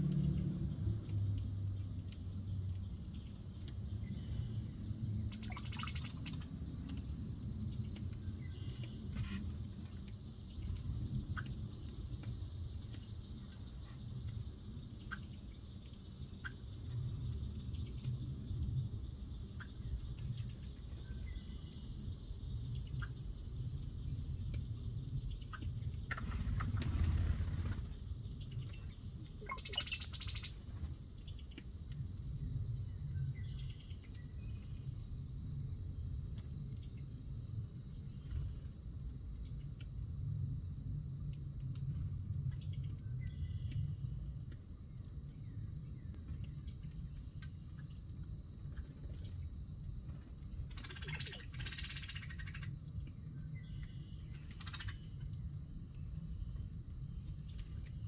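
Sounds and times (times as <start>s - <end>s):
low outdoor rumble: 0.0s - 58.0s
wild birds calling: 29.4s - 30.6s.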